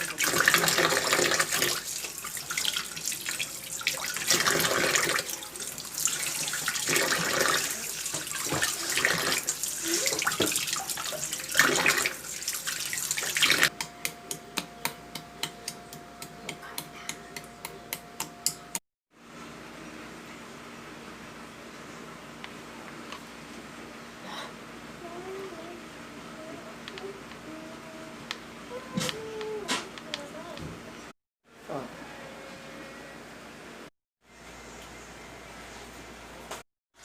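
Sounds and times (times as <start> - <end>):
tap water running into sink: 0.0 - 13.7
faint steady hum: 19.4 - 31.1.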